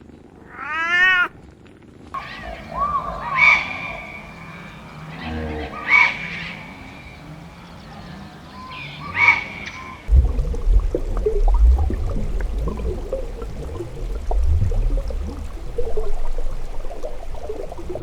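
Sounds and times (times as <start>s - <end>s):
loud low rushing noise: 10.1s - 18.0s.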